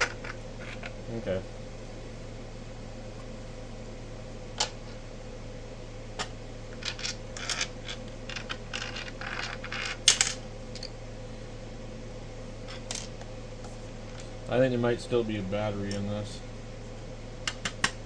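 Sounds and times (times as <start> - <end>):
metal parts clacking and rattling: 6.8 - 10.9.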